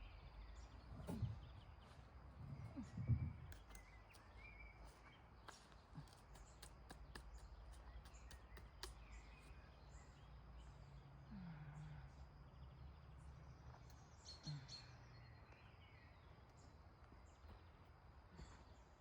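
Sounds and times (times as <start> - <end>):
faint bird chirps: 0.0 - 6.7, 7.3 - 19.0.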